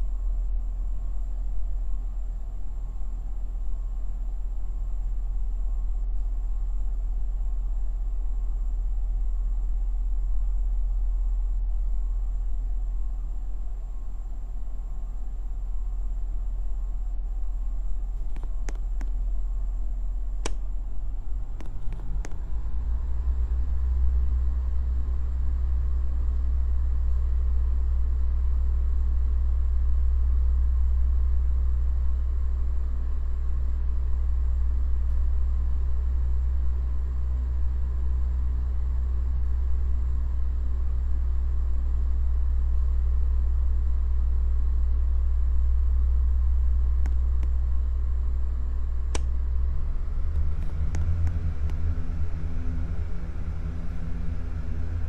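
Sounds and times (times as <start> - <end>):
wall fan humming: 0.0 - 55.0
fan switch clicks: 20.4 - 20.8, 21.6 - 22.5, 49.1 - 49.4.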